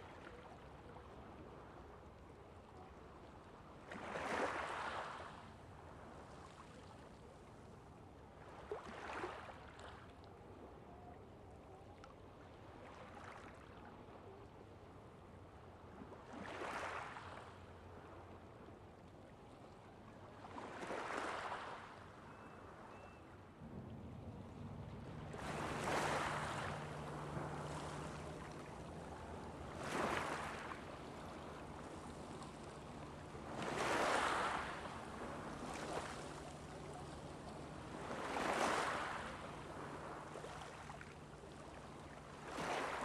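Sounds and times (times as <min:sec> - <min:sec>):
small waves washing onto beach: 0:03.6 - 0:07.0, 0:15.7 - 0:18.4, 0:20.0 - 0:22.2, 0:23.6 - 0:43.0.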